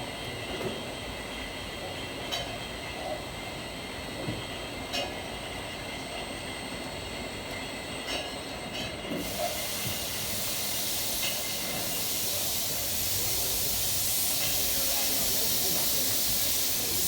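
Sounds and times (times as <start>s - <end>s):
bottling machinery running: 5.5s - 17.0s
loud steady hiss: 9.2s - 17.0s.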